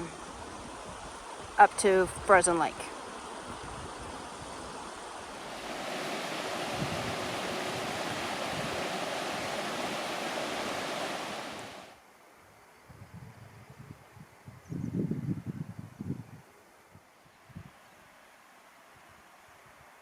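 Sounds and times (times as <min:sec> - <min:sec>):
wind rushing: 0:05.3 - 0:12.0.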